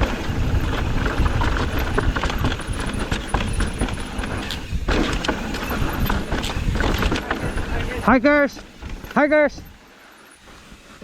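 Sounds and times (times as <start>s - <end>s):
tyres knocking over rocks: 0.0s - 7.8s
wind rumble on microphone: 0.0s - 9.8s
bike frame rattling: 0.0s - 11.0s.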